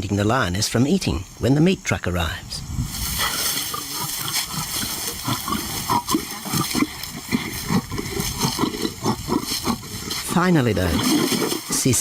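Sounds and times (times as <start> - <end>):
lions growling and snarling: 3.0 - 12.0.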